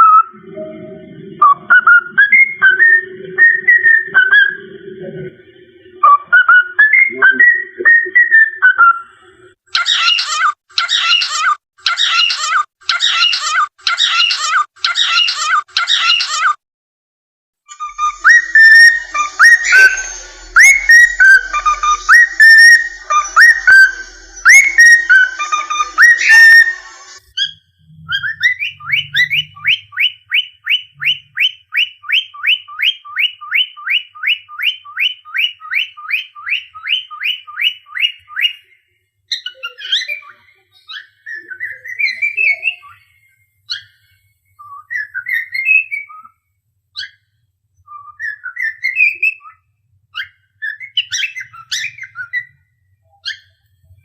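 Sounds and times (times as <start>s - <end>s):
bird chirps and calls: 9.7s - 16.6s, 17.7s - 46.4s, 47.0s - 53.7s
cockatiel whistling: 17.7s - 38.6s, 47.9s - 49.6s, 50.2s - 52.6s.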